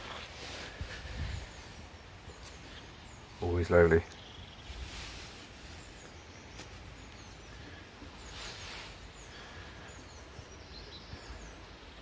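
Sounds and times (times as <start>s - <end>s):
small bird chirping: 0.0s - 12.0s
steady background hiss: 0.0s - 12.0s.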